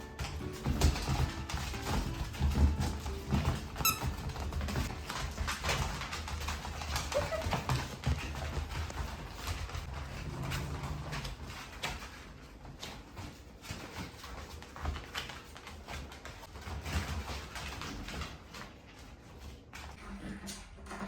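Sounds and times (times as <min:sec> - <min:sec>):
soft thumps and scuffling: 0:00.0 - 0:09.9
puppy claws clicking on hard floor: 0:00.0 - 0:20.0.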